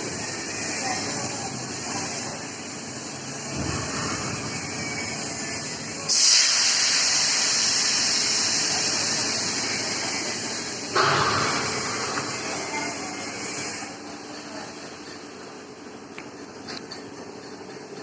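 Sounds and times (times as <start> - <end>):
steam hissing from boiler: 0.0 - 15.8.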